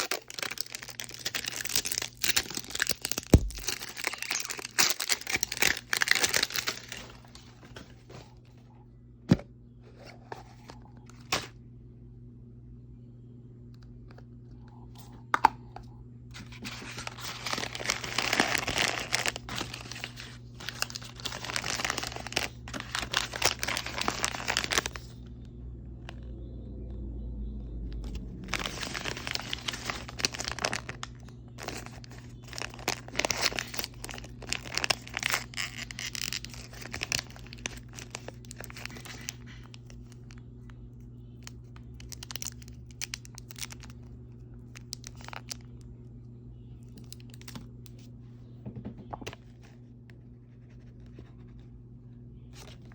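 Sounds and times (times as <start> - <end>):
plastic packaging crinkling: 0.0 - 8.6, 16.3 - 25.2, 28.0 - 40.5, 41.4 - 45.9, 46.8 - 48.1.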